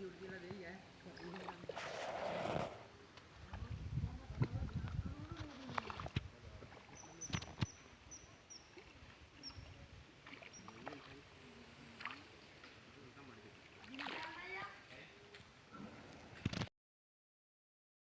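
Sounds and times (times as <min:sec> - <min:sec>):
water sloshing and splashing: 0:01.0 - 0:02.8, 0:05.4 - 0:08.0, 0:08.6 - 0:14.9.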